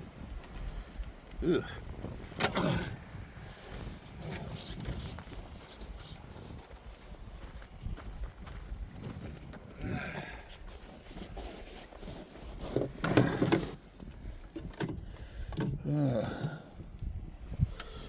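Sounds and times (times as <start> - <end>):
man grunting with effort: 1.4 - 3.0, 15.8 - 16.8.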